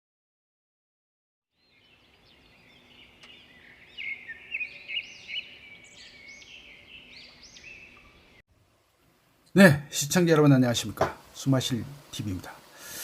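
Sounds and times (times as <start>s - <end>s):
birds chirping: 1.5s - 8.4s.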